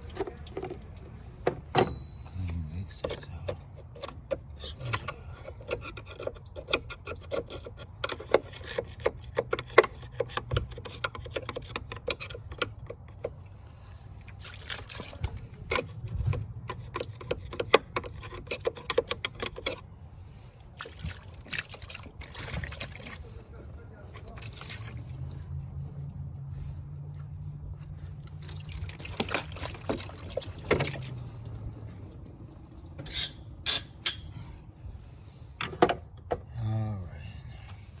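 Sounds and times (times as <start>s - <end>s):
water trickling over metal: 0.0s - 1.7s, 5.4s - 18.9s, 20.6s - 35.4s.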